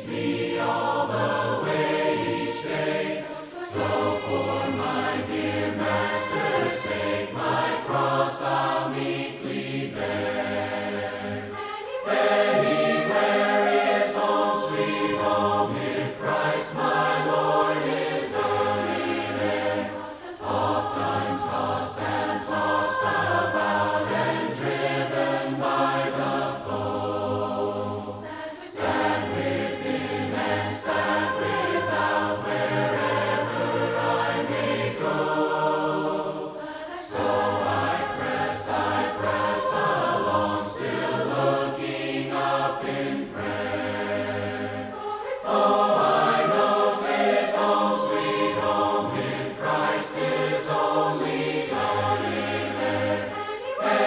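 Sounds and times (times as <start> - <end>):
choir singing a hymn unaccompanied: 0.0 - 54.0.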